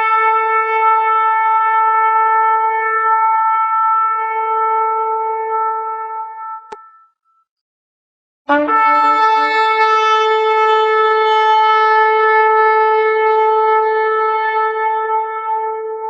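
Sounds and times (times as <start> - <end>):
shofar blast: 8.5 - 16.0.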